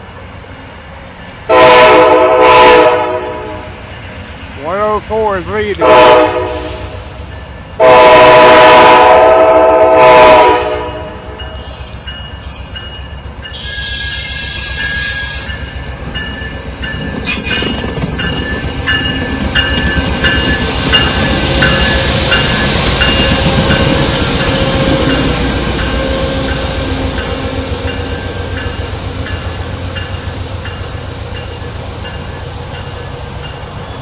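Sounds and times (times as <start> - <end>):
train rumble: 0.0 - 34.0
train horn blast: 1.5 - 3.8, 5.7 - 7.1, 7.8 - 11.3
train wheels squealing and clicking: 11.3 - 34.0.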